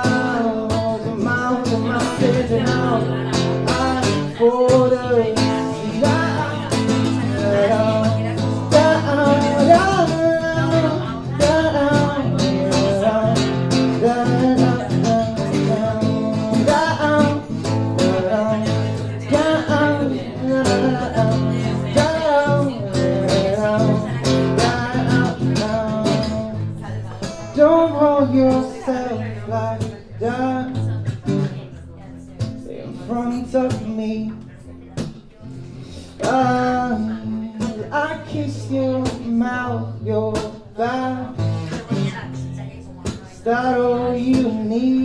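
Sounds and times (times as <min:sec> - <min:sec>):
person singing wordless melody: 0:00.0 - 0:31.6, 0:35.8 - 0:45.0
acoustic guitar strumming: 0:00.0 - 0:45.0.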